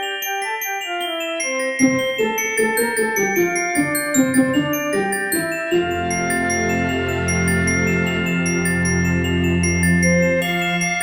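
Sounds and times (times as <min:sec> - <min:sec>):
quick repeated high notes: 0:01.8 - 0:08.1.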